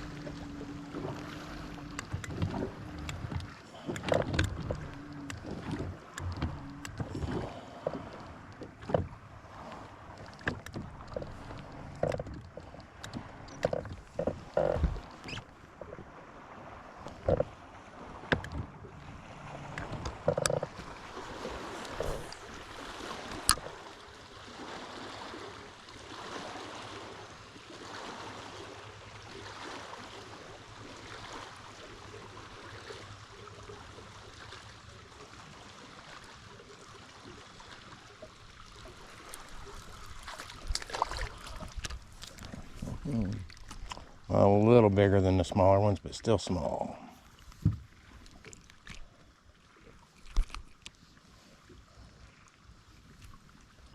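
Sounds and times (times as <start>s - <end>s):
clicks and knocks in a boat: 0.0s - 53.9s
soft outdoor noise over water: 0.0s - 53.9s.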